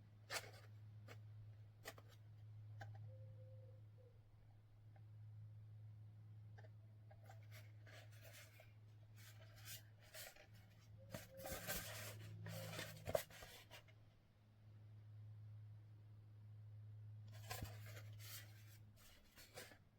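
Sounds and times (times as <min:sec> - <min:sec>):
scratchy rubbing handling noise: 0:07.2 - 0:13.9, 0:17.4 - 0:19.8.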